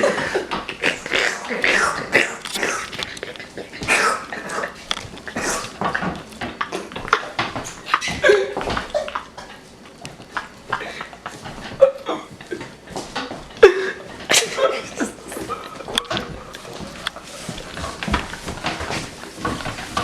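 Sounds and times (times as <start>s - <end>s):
people laughing hard: 13.6s - 16.3s.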